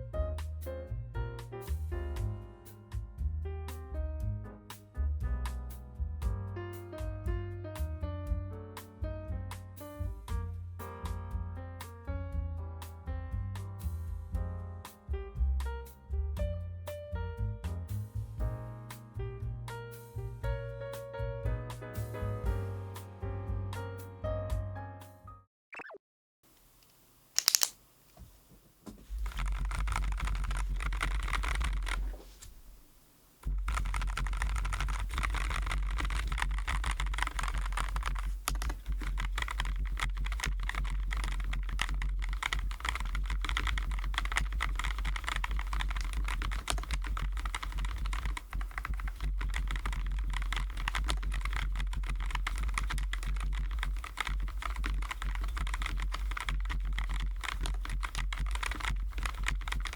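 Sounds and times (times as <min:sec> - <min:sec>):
sharp click: 0:26.8 - 0:27.8
mechanical keyboard typing: 0:27.4 - 0:27.7, 0:29.2 - 0:32.2, 0:33.5 - 0:59.9.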